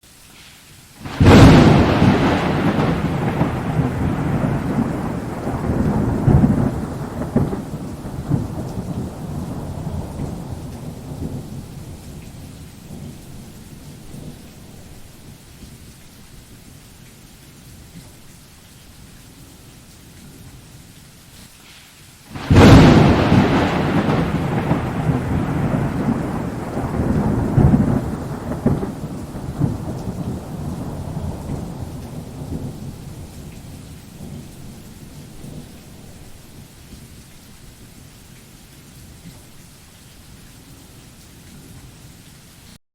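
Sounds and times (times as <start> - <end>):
steady rain: 0.0 - 42.8
thunder crack and rumble: 1.0 - 14.9, 22.3 - 37.0.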